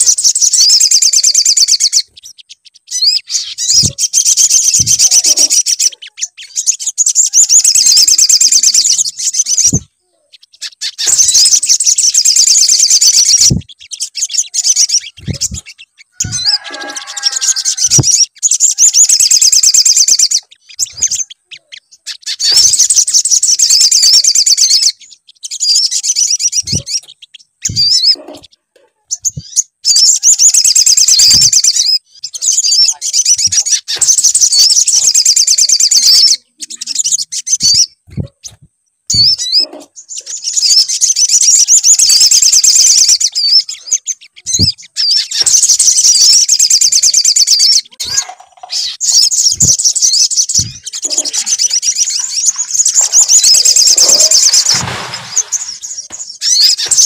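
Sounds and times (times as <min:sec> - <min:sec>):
high-pitched bird trilling: 0:00.0 - 0:57.0
low thumps: 0:15.2 - 0:15.6, 0:49.5 - 0:51.2.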